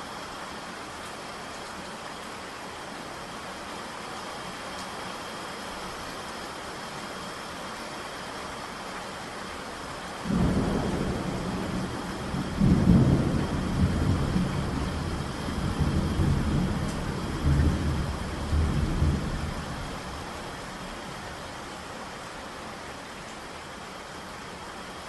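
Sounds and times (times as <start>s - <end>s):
heavy rain: 0.0s - 25.0s
thunder rolling: 10.3s - 19.7s.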